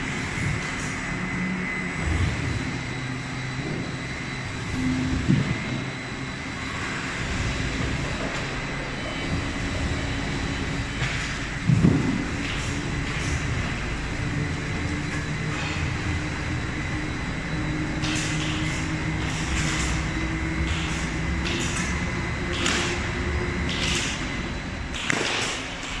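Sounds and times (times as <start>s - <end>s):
factory machinery running: 0.0s - 26.0s.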